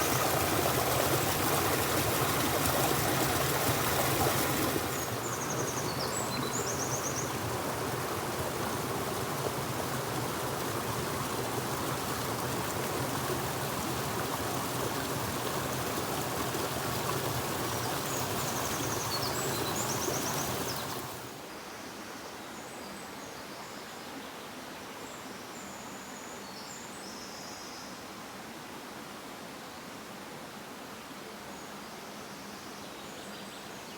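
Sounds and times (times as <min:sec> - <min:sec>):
stream running: 0:00.0 - 0:21.5.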